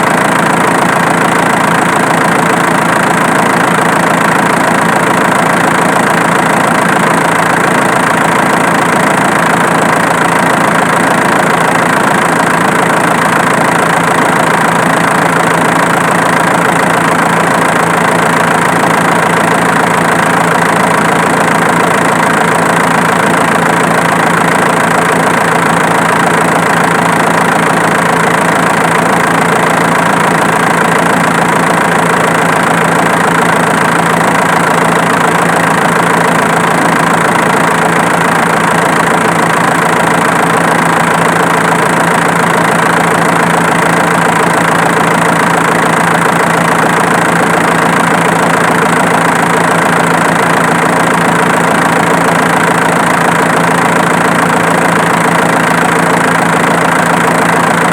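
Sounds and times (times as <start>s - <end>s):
diesel engine idling: 0.0s - 57.9s.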